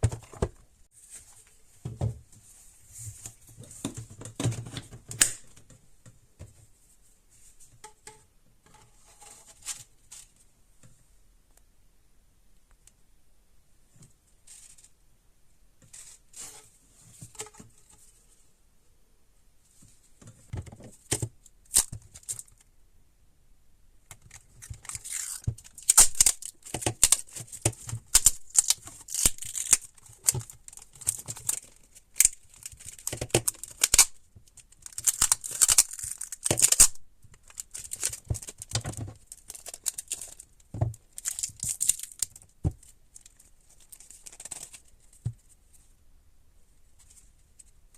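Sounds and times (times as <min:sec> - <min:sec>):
crinkling: 0:13.9 - 0:15.0, 0:19.6 - 0:22.7, 0:24.1 - 0:46.0.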